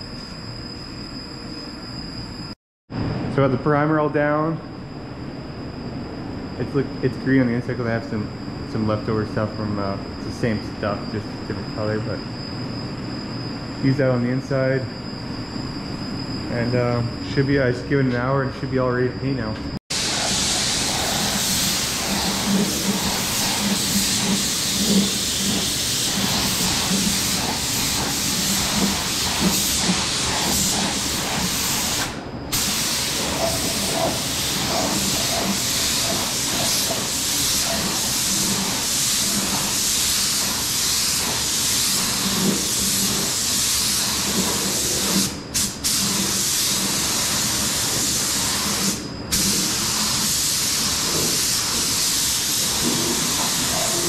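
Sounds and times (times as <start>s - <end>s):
paint spray gun hissing: 19.9s - 54.0s.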